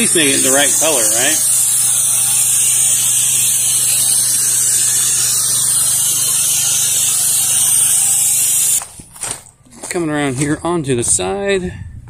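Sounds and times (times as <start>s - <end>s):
high-pressure water spray hissing: 0.0s - 9.0s
pressure washer engine and pump hum: 0.0s - 9.1s.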